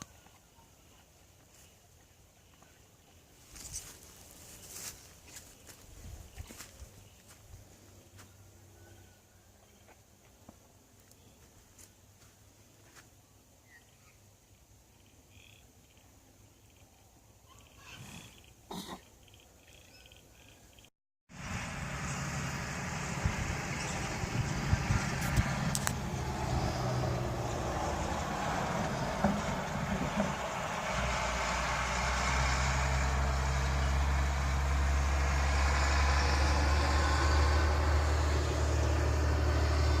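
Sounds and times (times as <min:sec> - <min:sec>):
truck engine running: 0:21.3 - 0:40.0.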